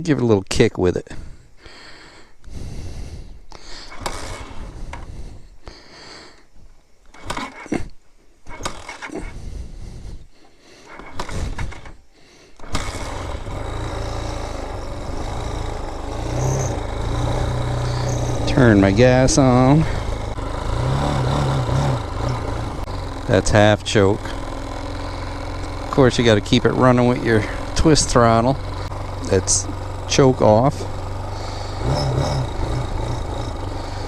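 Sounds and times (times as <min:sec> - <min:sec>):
motorcycle engine idling: 0:10.8 - 0:34.0.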